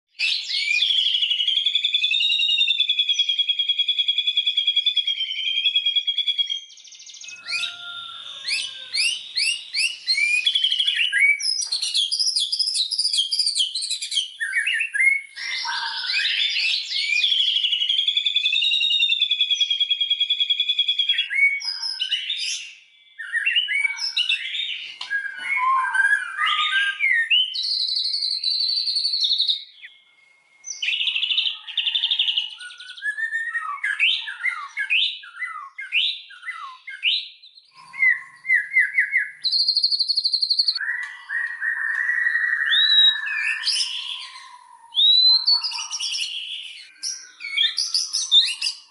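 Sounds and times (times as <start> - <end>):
songbird singing trills and whistles: 0.1 - 48.9.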